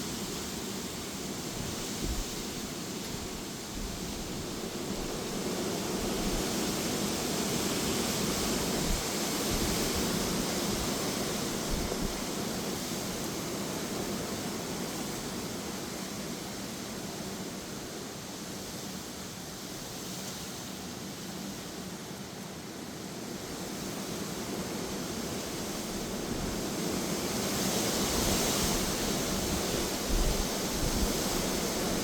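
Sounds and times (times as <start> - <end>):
rain: 0.0 - 32.0
strong gusty wind: 27.9 - 32.0.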